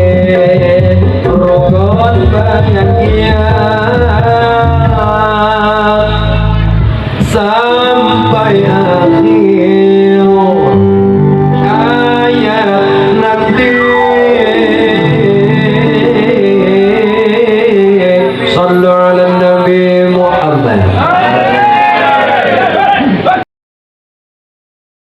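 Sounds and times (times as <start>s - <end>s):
guitar accompaniment: 0.0s - 23.4s
live band music: 0.0s - 23.4s
wavering sliding melody: 7.9s - 19.4s.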